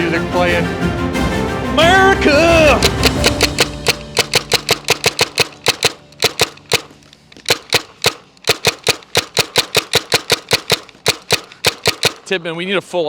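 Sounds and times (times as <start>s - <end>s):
paintball marker firing rapidly: 2.7s - 12.4s.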